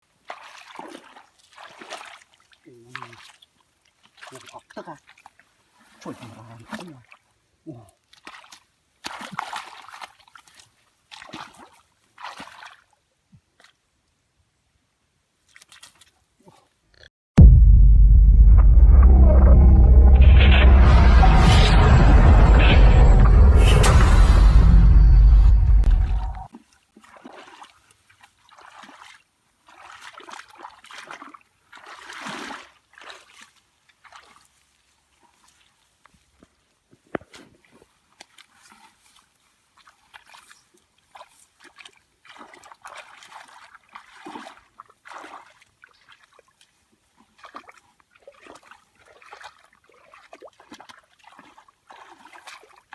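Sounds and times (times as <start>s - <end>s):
water sloshing and splashing: 0.1s - 7.3s, 8.0s - 13.0s, 26.5s - 52.9s.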